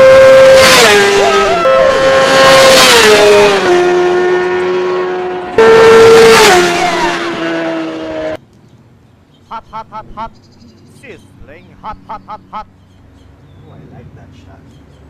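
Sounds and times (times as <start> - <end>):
motorbikes passing by fast: 0.0 - 8.4.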